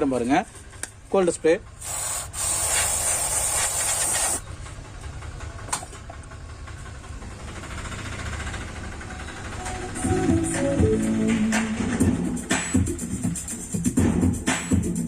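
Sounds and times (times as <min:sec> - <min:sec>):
aerosol spray hissing: 0:01.8 - 0:04.4.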